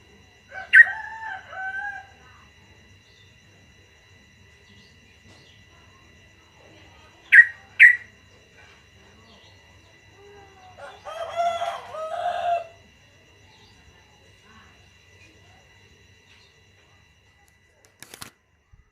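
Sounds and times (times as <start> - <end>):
rooster crowing: 0.5 - 2.4, 10.7 - 12.9.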